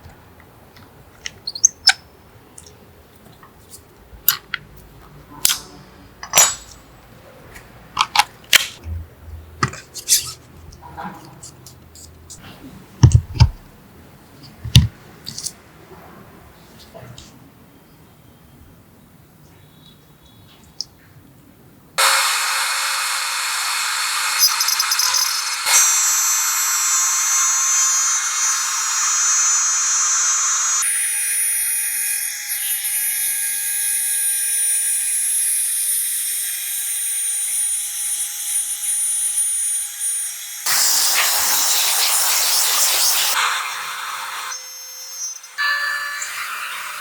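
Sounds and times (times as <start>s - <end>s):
power tool high-pitched whine: 22.0s - 47.0s.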